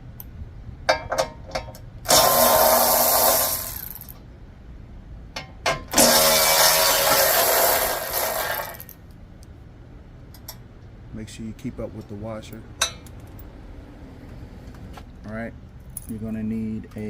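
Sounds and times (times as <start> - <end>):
power tool loosening nuts: 2.1 - 4.2, 5.9 - 9.0.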